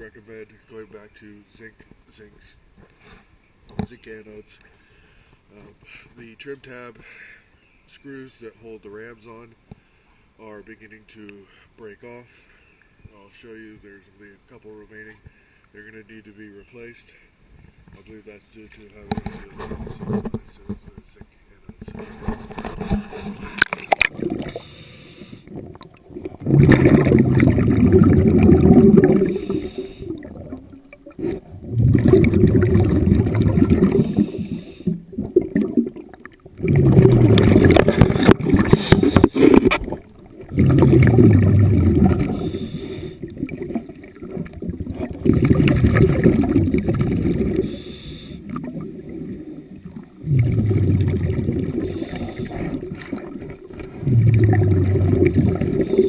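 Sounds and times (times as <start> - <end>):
regulator bubbles gurgling underwater: 21.9 - 56.0.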